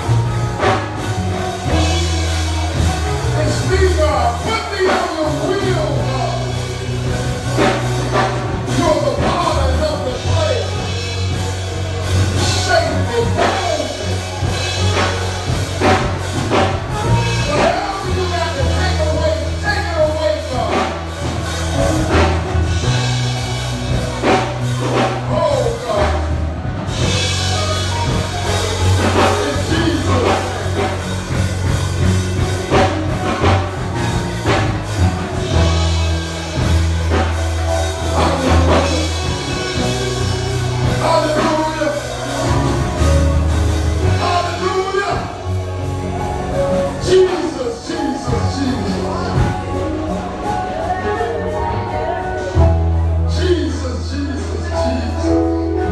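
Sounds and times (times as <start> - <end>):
worship band with drum kit: 0.0 - 55.9
person singing: 46.4 - 55.9.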